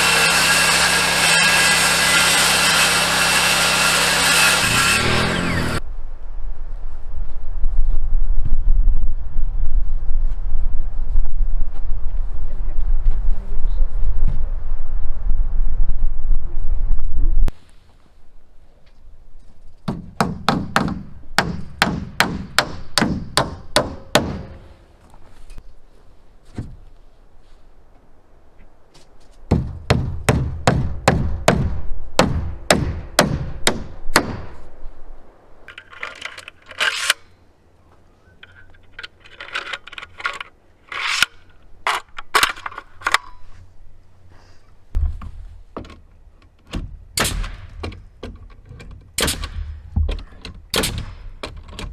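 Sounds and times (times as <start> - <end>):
hammer driving nails into wood: 19.9 - 24.7, 46.7 - 51.9.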